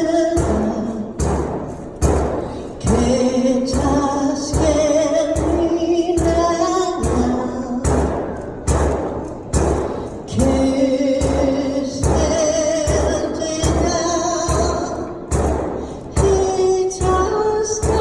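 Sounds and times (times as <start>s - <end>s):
steady knocking beat: 0.0s - 18.0s.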